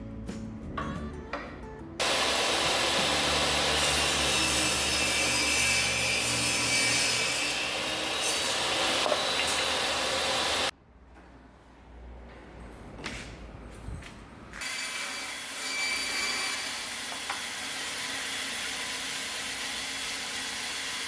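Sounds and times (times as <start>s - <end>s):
saw cutting wood: 2.0s - 10.7s, 14.6s - 21.0s.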